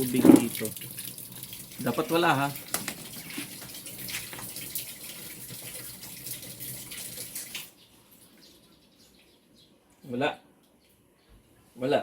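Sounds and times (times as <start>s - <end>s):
water pouring into tub: 0.0s - 7.7s.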